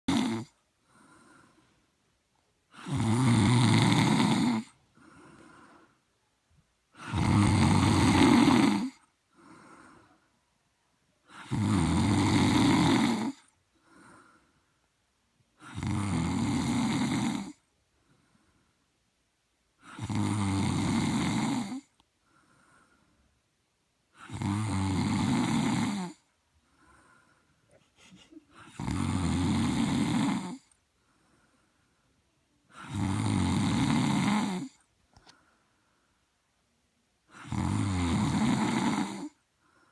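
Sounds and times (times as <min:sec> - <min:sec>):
person snoring: 0:00.1 - 0:01.7, 0:02.7 - 0:05.9, 0:06.9 - 0:10.2, 0:11.3 - 0:14.4, 0:15.6 - 0:17.6, 0:19.8 - 0:21.9, 0:24.2 - 0:26.3, 0:27.0 - 0:30.8, 0:32.7 - 0:34.8, 0:37.3 - 0:39.4
quiet breath: 0:00.4 - 0:03.0, 0:04.2 - 0:07.2, 0:08.3 - 0:11.5, 0:13.1 - 0:15.8, 0:16.7 - 0:20.0, 0:21.4 - 0:24.3, 0:25.3 - 0:28.9, 0:29.6 - 0:37.6, 0:38.2 - 0:39.9.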